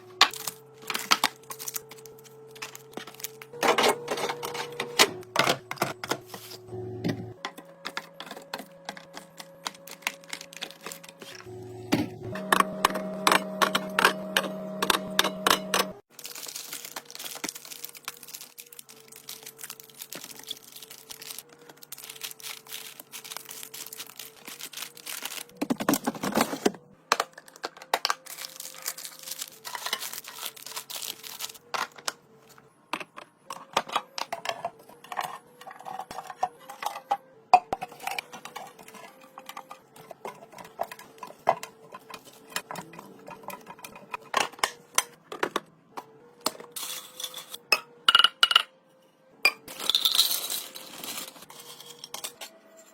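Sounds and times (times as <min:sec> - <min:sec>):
music: 0:00.0 - 0:26.1, 0:26.8 - 0:52.9
plastic packaging crinkling: 0:00.3 - 0:03.6, 0:07.8 - 0:11.5, 0:16.1 - 0:32.2.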